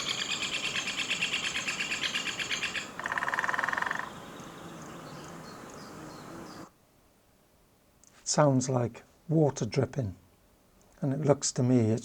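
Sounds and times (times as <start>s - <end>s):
birds trilling: 0.0s - 6.7s.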